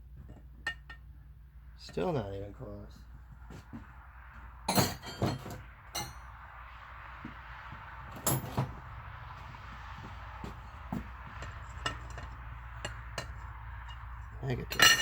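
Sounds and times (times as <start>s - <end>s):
steel tools clinking: 4.7s - 6.2s, 11.4s - 15.0s.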